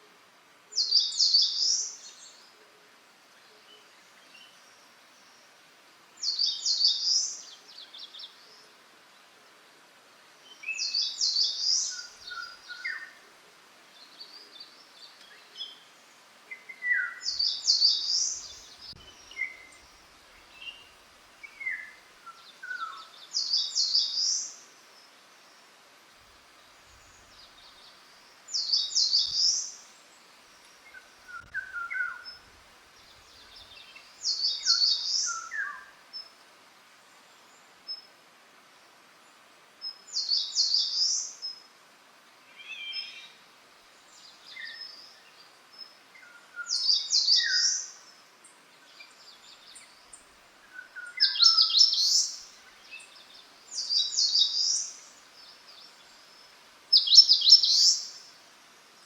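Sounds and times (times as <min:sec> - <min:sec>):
bird singing lower notes: 0:30.9 - 0:32.4, 0:33.0 - 0:36.3, 0:46.2 - 0:48.1, 0:48.8 - 0:58.3.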